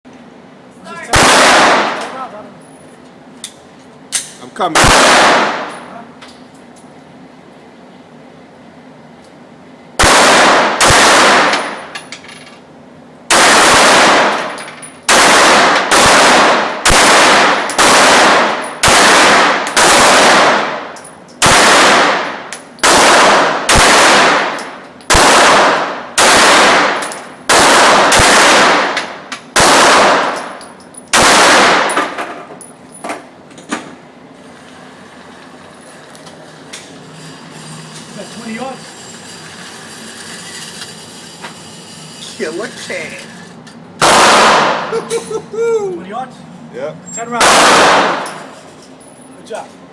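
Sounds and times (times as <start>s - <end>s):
pistol shots echoing: 1.1s - 2.2s, 4.7s - 5.8s, 10.0s - 11.8s, 13.3s - 14.5s, 15.1s - 32.2s, 44.0s - 44.9s, 47.4s - 48.5s.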